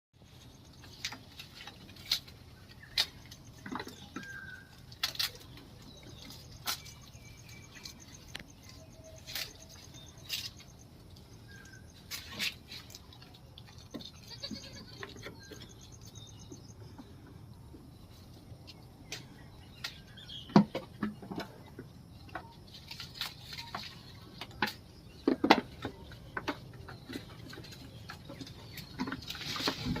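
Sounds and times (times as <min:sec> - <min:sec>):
goats bleating: 0:14.2 - 0:15.1.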